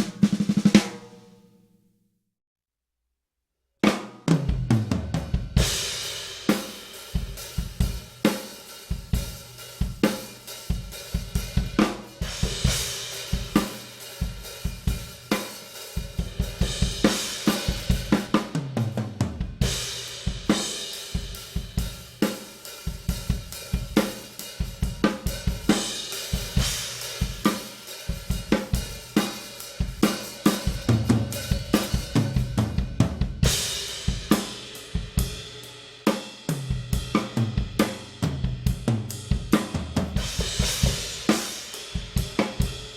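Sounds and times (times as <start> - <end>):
snare drum: 0.0 - 1.2, 23.8 - 34.6, 36.1 - 42.9
bass drum: 30.6 - 35.4, 36.5 - 41.4.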